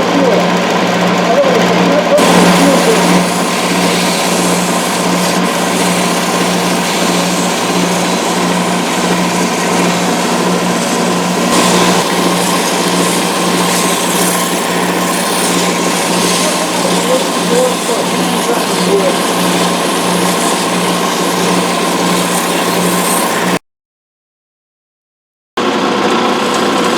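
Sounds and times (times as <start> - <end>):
lathe motor humming: 0.0 - 23.6
tool hissing on spinning wood: 2.2 - 23.6.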